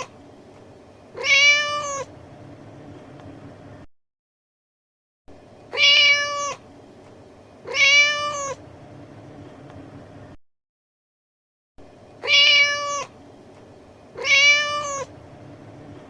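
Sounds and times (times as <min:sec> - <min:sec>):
cat meowing: 0:01.2 - 0:02.1, 0:05.7 - 0:06.6, 0:07.6 - 0:08.6, 0:12.2 - 0:13.1, 0:14.2 - 0:15.1.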